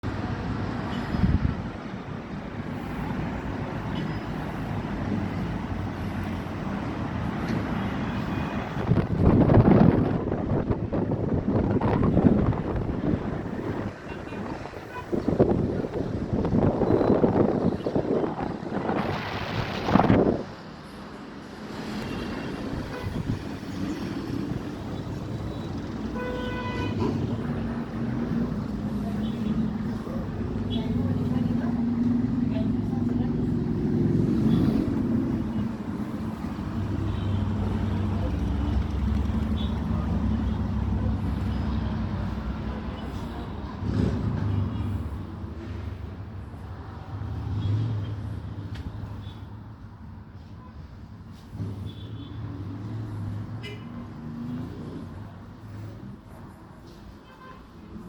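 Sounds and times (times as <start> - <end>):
street traffic rumble: 0.0 - 58.0
wind buffeting microphone: 8.7 - 20.6.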